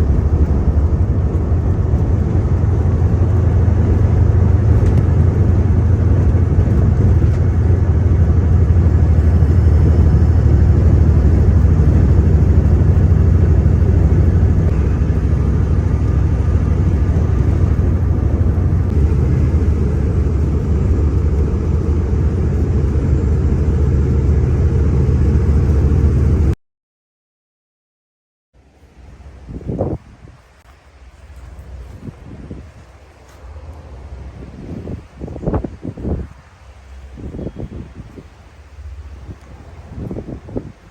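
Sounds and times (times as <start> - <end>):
truck diesel engine running: 0.0 - 26.6.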